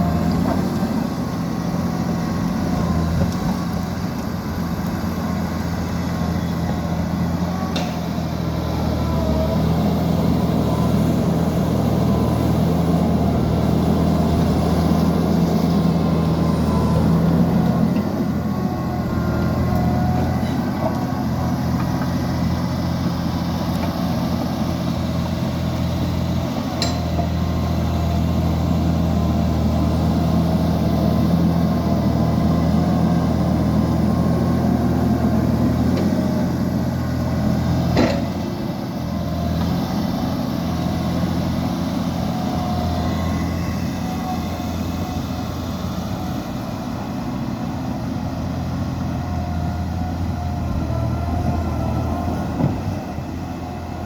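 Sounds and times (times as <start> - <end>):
dozer diesel engine running: 0.0 - 54.0
sharp metallic knocks: 26.8 - 27.2.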